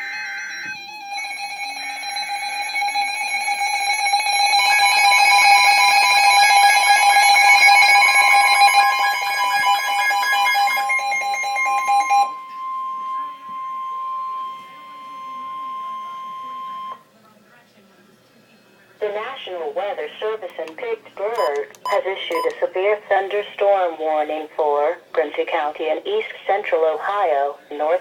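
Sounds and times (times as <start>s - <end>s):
harsh two-tone alarm: 0.0s - 17.0s, 21.4s - 22.6s.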